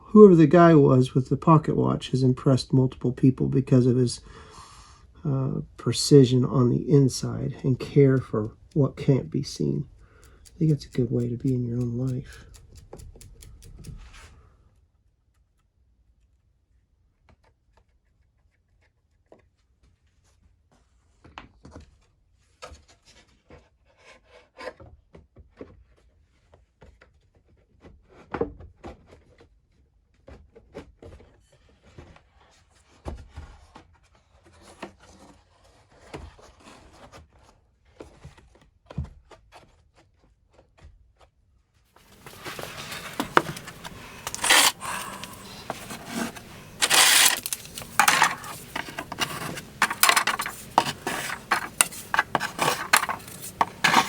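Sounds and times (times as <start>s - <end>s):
wooden parts knocking and clicking: 42.1s - 54.0s.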